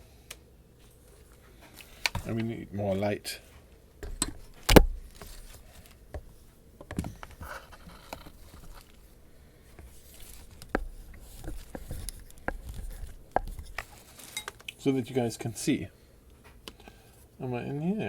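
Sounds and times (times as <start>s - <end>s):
handling clicks and taps: 4.0s - 5.5s, 6.1s - 9.1s, 9.8s - 14.8s.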